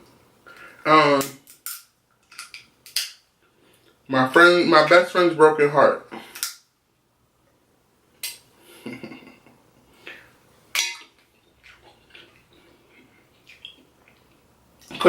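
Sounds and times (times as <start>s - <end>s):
tableware clinking: 10.8s - 11.2s.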